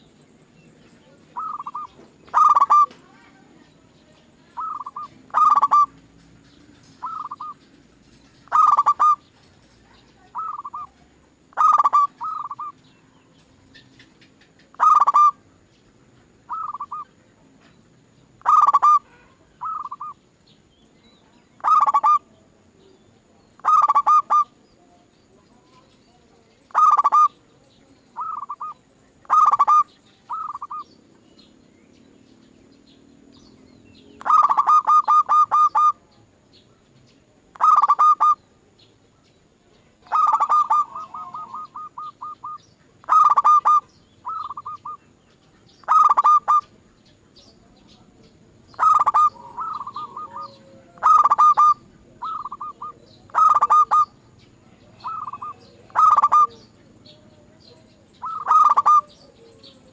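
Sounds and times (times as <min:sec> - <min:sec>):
doves cooing: 0:01.2 - 0:03.1, 0:04.5 - 0:07.7, 0:08.4 - 0:09.7, 0:10.3 - 0:12.8, 0:13.8 - 0:15.4, 0:16.5 - 0:17.0, 0:18.4 - 0:20.2, 0:21.6 - 0:22.3, 0:23.6 - 0:24.5, 0:26.7 - 0:27.4, 0:28.2 - 0:30.9, 0:34.2 - 0:36.1, 0:37.6 - 0:38.4, 0:40.0 - 0:45.0, 0:45.8 - 0:46.7, 0:48.7 - 0:56.8, 0:57.8 - 0:59.9.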